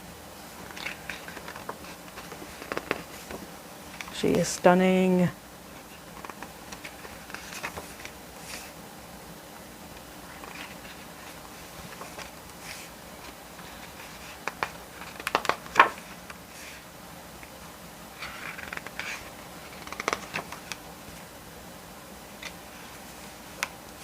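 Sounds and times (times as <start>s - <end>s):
pages turning and rustling: 0.6s - 4.4s, 5.7s - 8.8s, 9.9s - 16.8s, 18.1s - 21.3s, 22.3s - 23.8s.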